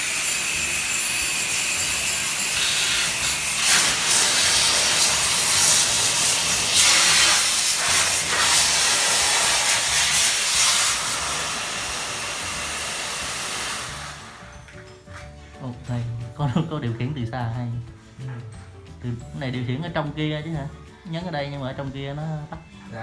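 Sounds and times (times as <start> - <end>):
water spray hissing: 0.0 - 14.6.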